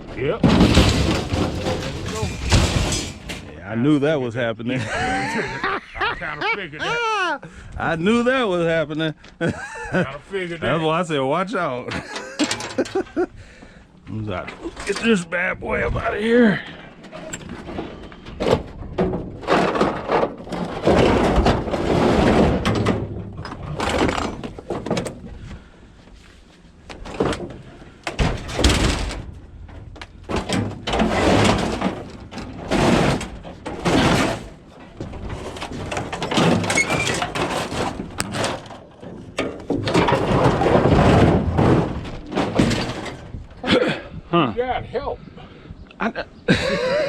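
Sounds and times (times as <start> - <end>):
metal machine scraping and thudding: 0.4 - 3.6, 17.1 - 25.1, 27.1 - 43.6.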